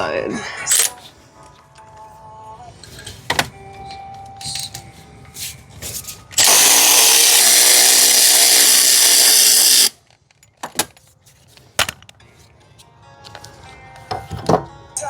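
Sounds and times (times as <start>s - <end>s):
power tool spinning out bolt: 0.7s - 1.0s, 6.4s - 10.0s.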